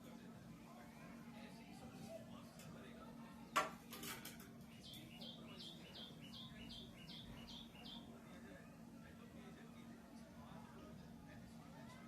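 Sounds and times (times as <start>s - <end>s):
bird chirping: 4.7s - 8.1s.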